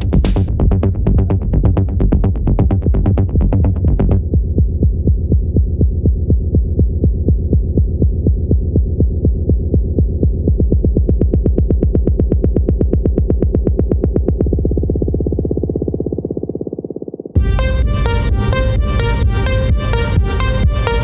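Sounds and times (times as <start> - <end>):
electronic music with throbbing bass: 0.0 - 21.0.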